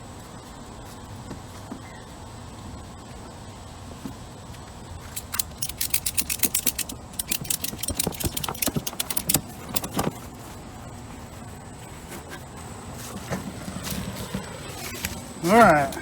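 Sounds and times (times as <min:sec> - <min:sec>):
ratchet strap clicking: 0:05.1 - 0:10.2.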